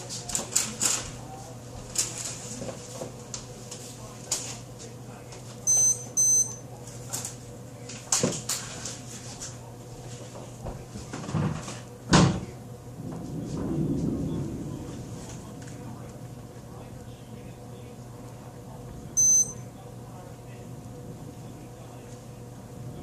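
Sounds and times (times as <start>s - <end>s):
steady low hum: 0.0s - 23.0s
short electronic beeps: 5.7s - 6.6s, 19.2s - 19.6s.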